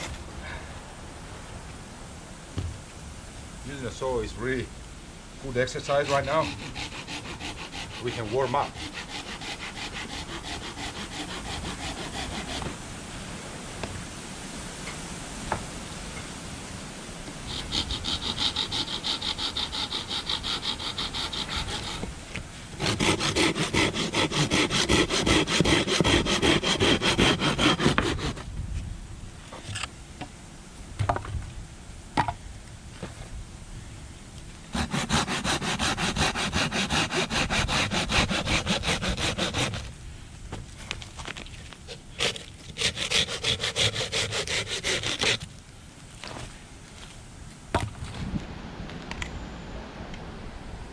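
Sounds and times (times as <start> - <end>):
hand saw cutting wood: 5.6 - 12.8, 17.5 - 22.1, 22.8 - 28.5, 34.7 - 39.9, 41.9 - 45.5.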